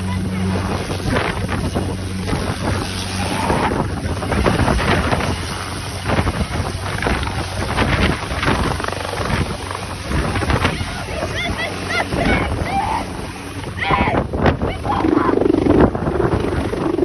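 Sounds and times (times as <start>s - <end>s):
low engine hum: 0.0s - 17.0s
wind buffeting microphone: 0.0s - 17.0s.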